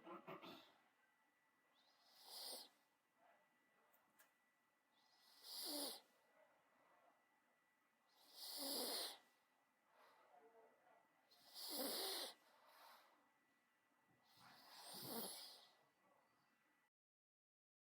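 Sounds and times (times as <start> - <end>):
dog breathing: 14.3 - 15.7.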